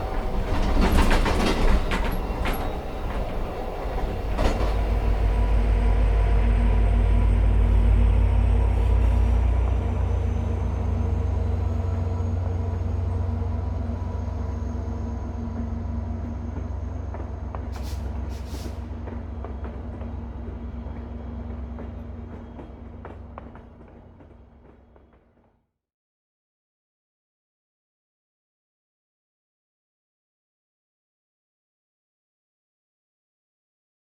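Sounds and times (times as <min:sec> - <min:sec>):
passenger train rumbling: 0:00.0 - 0:25.4
air hissing: 0:17.7 - 0:18.9.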